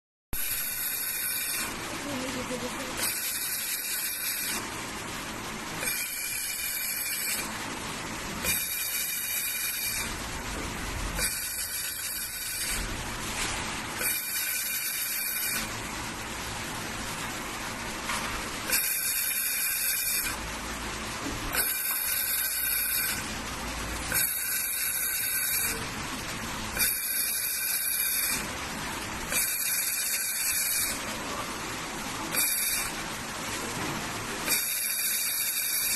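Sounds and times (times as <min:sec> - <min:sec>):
laser welding machine hissing: 0:00.4 - 0:33.7, 0:34.3 - 0:35.9.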